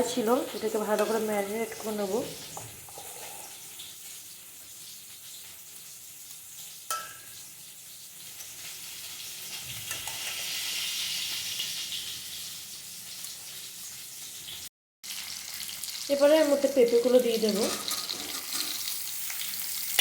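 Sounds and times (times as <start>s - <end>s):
potatoes sizzling in a pan: 0.0s - 20.0s
sharp clink: 6.9s - 7.3s.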